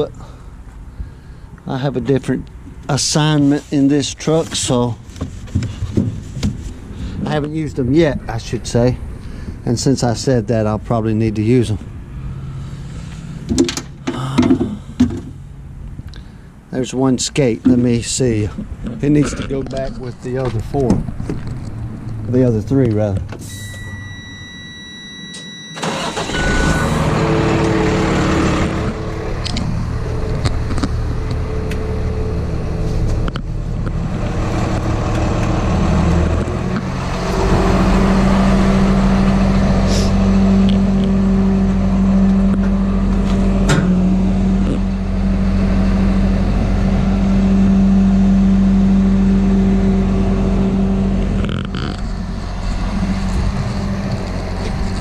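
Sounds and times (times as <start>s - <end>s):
truck engine starting and running: 0.0s - 55.0s
steady electronic tone: 23.4s - 55.0s.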